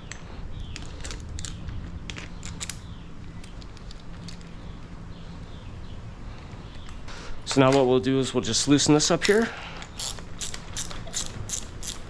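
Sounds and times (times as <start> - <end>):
steady low hum: 0.0 - 12.0
hand tools clicking and clinking: 9.2 - 12.0.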